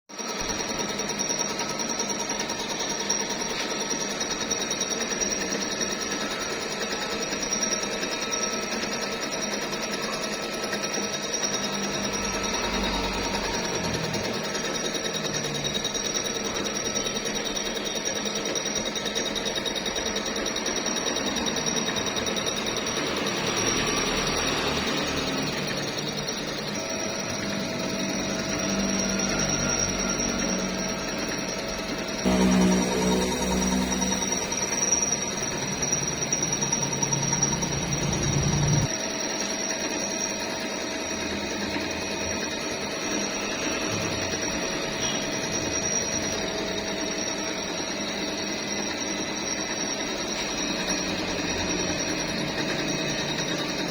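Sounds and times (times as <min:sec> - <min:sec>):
milling machine cutting metal: 0:00.3 - 0:53.9
louder humming tone: 0:24.0 - 0:38.9.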